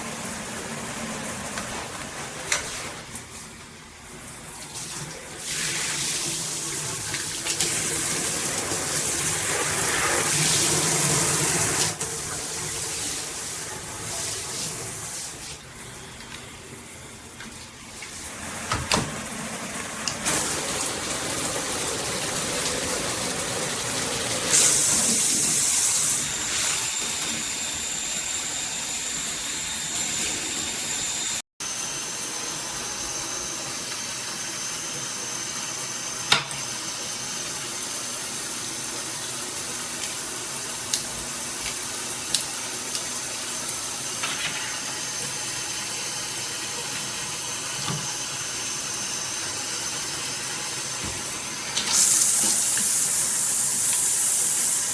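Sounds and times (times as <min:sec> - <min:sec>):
water spraying from shower head: 0:19.5 - 0:31.0, 0:51.2 - 0:54.9.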